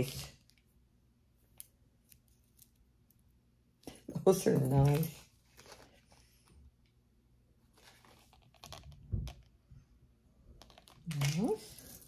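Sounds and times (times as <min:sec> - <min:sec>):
faint rustling of packaging: 0:01.4 - 0:07.0, 0:07.6 - 0:09.9.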